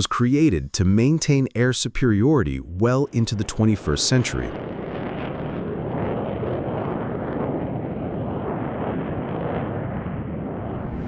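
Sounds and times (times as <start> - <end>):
muffled jet engines roaring: 2.6 - 11.0.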